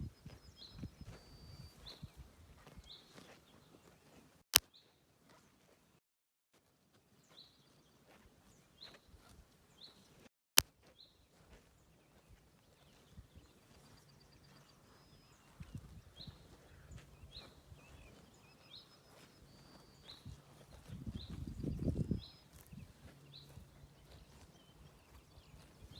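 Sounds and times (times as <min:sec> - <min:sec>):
small birds chirping: 0:00.0 - 0:05.6, 0:07.2 - 0:25.9
cows tearing and chewing grass: 0:19.0 - 0:25.9.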